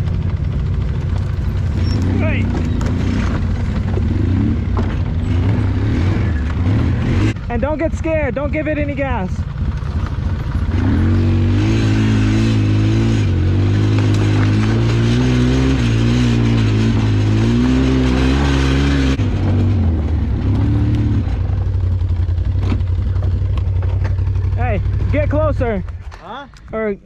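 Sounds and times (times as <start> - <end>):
atv engine revving: 0.0 - 26.4.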